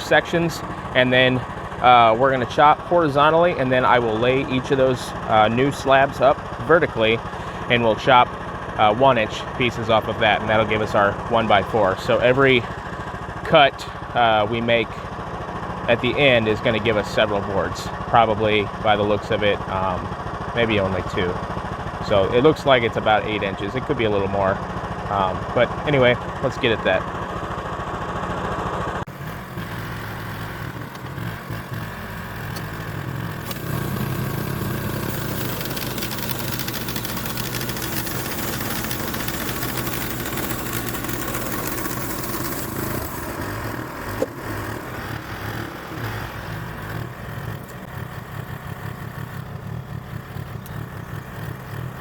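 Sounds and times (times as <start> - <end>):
band saw blade cutting log: 0.0 - 15.2, 29.1 - 52.0
small gasoline engine droning: 0.0 - 52.0.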